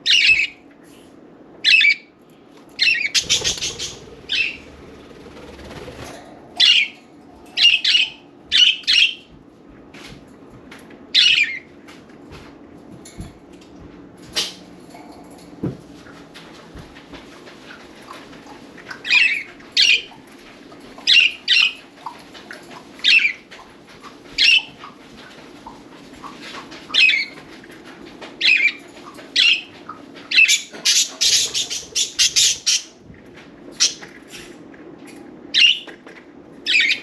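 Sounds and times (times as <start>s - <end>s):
budgerigars chirping: 2.8s - 4.6s, 30.3s - 33.0s.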